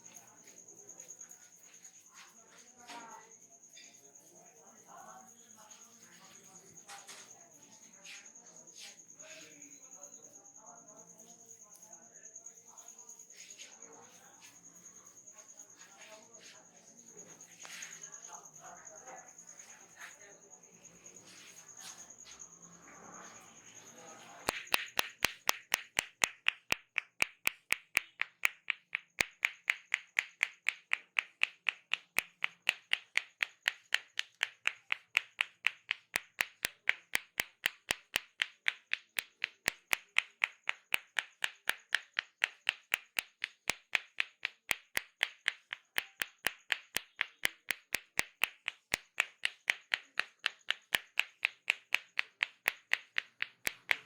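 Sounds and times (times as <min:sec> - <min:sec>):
hands clapping: 0:24.4 - 0:54.0.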